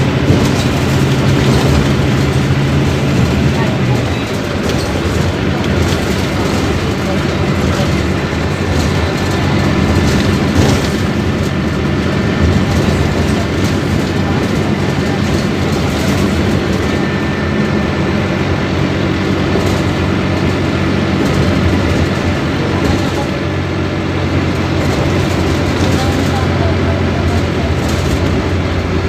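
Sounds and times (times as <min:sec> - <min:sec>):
bus diesel engine droning: 0:00.0 - 0:29.0
road rumble: 0:00.0 - 0:29.0
clicks and rattles: 0:00.2 - 0:11.8.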